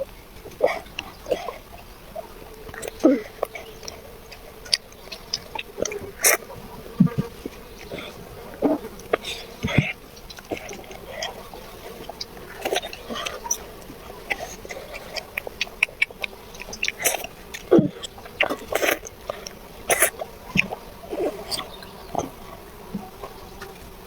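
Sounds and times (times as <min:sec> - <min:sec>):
child chewing: 0:00.5 - 0:24.0
child vocal sounds: 0:02.8 - 0:03.6.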